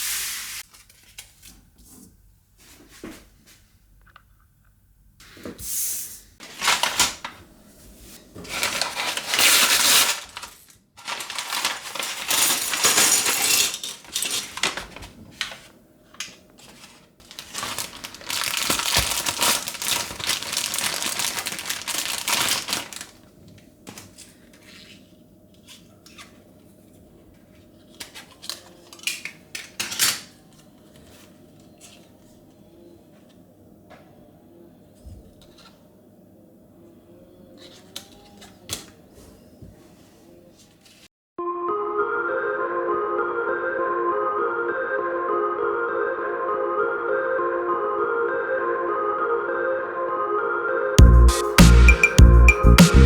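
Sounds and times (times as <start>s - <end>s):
plastic toy bricks clattering: 8.5s - 15.0s.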